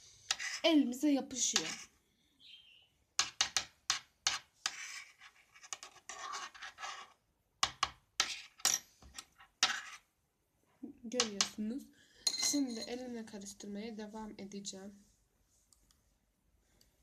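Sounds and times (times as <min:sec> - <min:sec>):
spoon scraping a bowl: 0:00.2 - 0:00.7, 0:04.3 - 0:07.2, 0:09.6 - 0:10.1.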